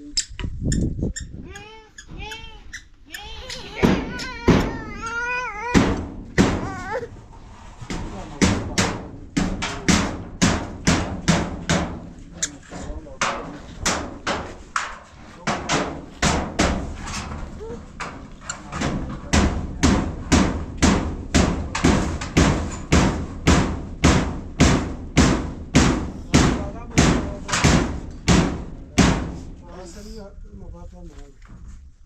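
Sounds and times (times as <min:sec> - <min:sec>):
hammer blows: 0:13.2 - 0:29.6.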